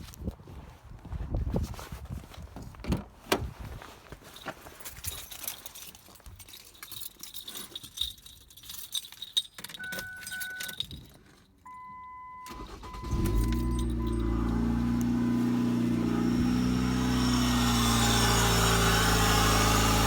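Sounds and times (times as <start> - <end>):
keys jangling: 4.4 - 11.6, 13.1 - 14.8
car warning beeps: 9.8 - 10.8, 11.6 - 16.0
car engine starting and idling: 12.3 - 20.0.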